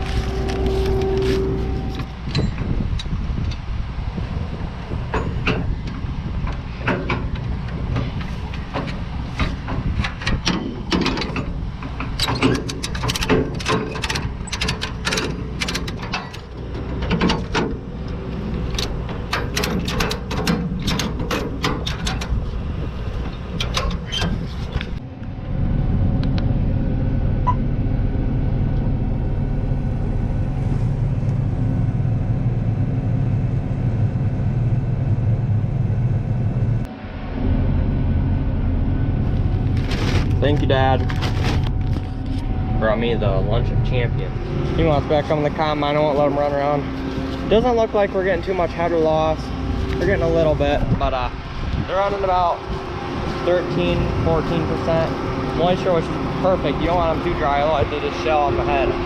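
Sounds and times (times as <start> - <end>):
sharp clicks and rattles: 0.0 - 25.0
farm vehicle engine running: 0.0 - 59.0.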